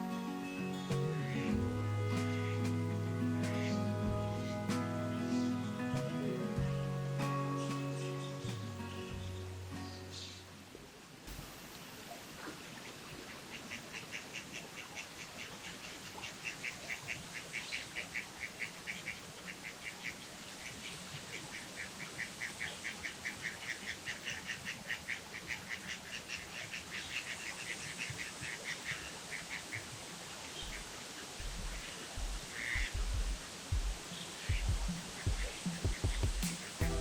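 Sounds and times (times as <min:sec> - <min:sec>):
low thumps: 0:31.4 - 0:37.0.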